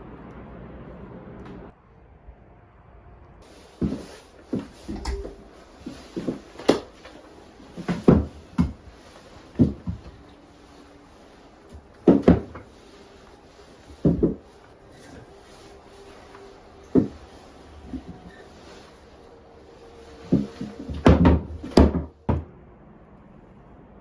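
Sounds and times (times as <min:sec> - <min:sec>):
knocks and thumps: 0:03.8 - 0:10.4, 0:11.7 - 0:14.6, 0:16.9 - 0:18.8, 0:20.2 - 0:22.5.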